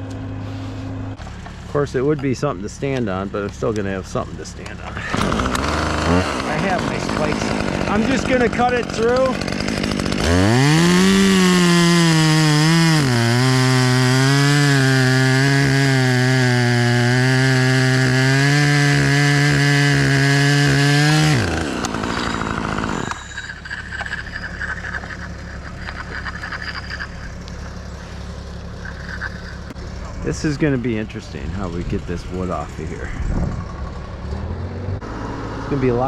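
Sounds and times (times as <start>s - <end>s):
chainsaw cutting wood: 4.6s - 28.0s.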